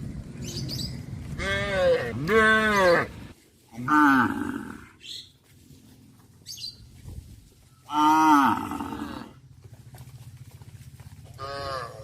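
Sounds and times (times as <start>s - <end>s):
cow mooing: 7.9s - 9.4s, 11.4s - 12.0s.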